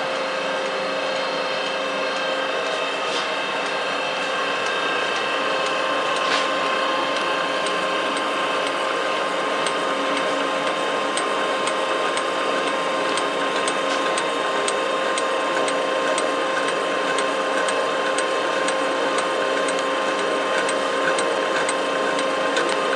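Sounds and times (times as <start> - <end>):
machine mechanical hum: 0.0 - 22.9
light regular ticking: 9.6 - 22.8.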